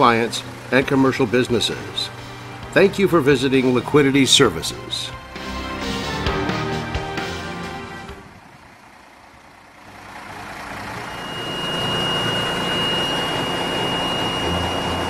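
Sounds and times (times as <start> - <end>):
diesel truck engine running: 0.0 - 15.0
thin high whine: 10.9 - 15.0.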